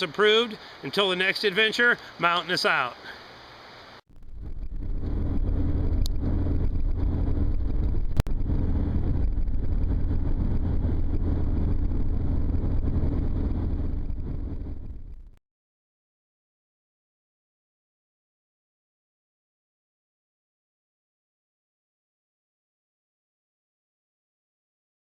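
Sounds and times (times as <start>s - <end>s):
vehicle motor rumbling: 4.1s - 15.4s.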